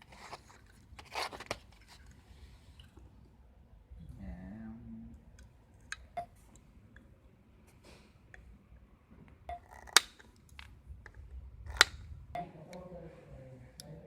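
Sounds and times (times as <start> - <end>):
tools and parts clicking and tapping: 9.5 - 12.0.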